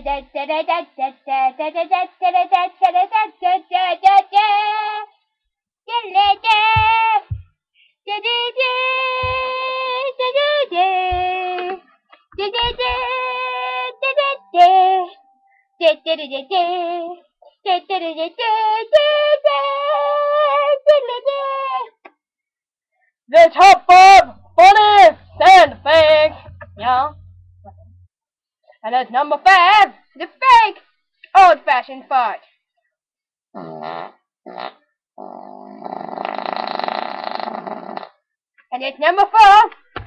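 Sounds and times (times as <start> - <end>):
child singing: 0.0 - 5.1, 5.9 - 7.4, 8.1 - 11.8, 12.4 - 15.2, 15.8 - 22.0, 23.4 - 27.1.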